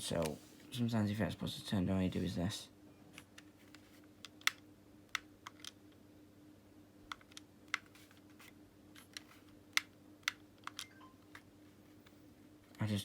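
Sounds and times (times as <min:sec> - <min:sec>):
faint steady hum: 0:00.0 - 0:13.0
controller buttons clicking: 0:09.8 - 0:11.4.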